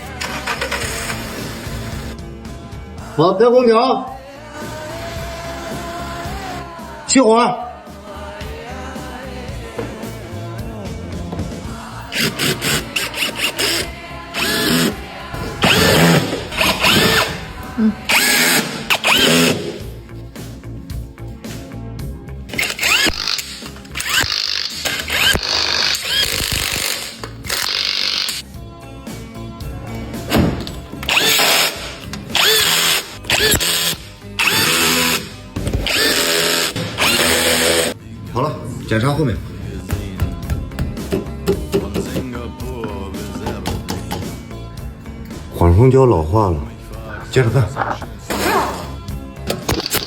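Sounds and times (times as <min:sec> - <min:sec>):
background music: 0:00.0 - 0:50.0
power tool bursts: 0:00.2 - 0:02.1, 0:12.1 - 0:15.0, 0:15.6 - 0:17.4, 0:18.1 - 0:19.8, 0:22.5 - 0:28.4, 0:31.0 - 0:38.0.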